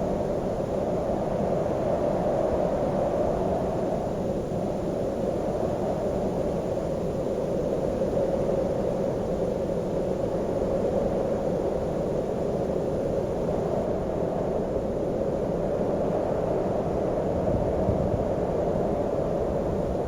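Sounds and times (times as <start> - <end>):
strong wind blowing: 15.7 - 20.0.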